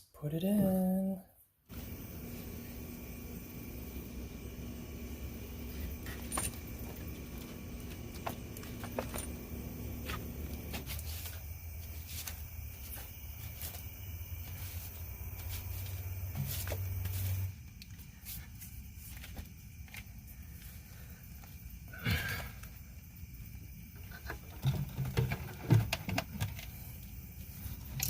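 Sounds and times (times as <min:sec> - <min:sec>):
steady low rumble: 0:01.7 - 0:17.8
metal parts clicking and clinking: 0:05.8 - 0:09.4.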